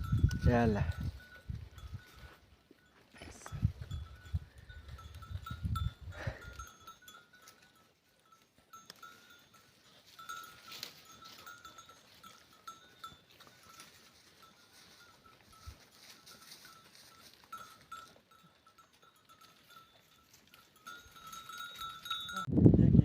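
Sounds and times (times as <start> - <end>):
goat bells clinking: 0.0 - 22.5.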